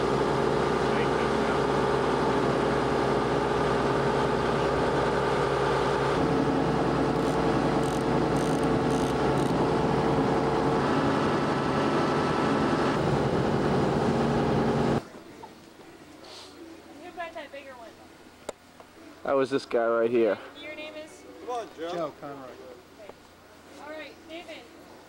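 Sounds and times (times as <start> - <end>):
boat engine running: 0.0 - 15.0.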